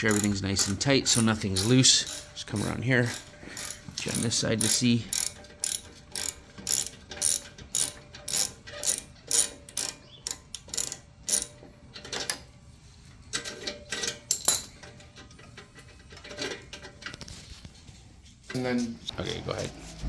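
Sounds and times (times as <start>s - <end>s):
ratchet wrench clicking: 0.0s - 11.5s.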